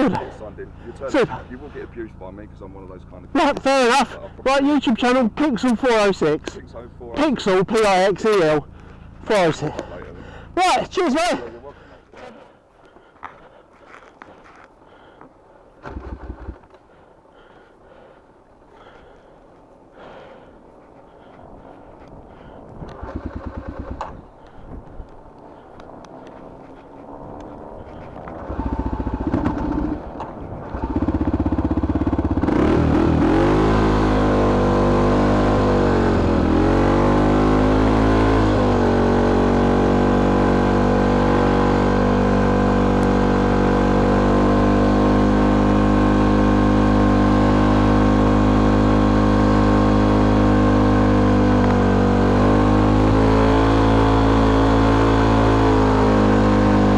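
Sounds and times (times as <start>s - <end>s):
engine cranking: 15.8s - 16.9s, 22.9s - 24.3s, 28.2s - 32.6s.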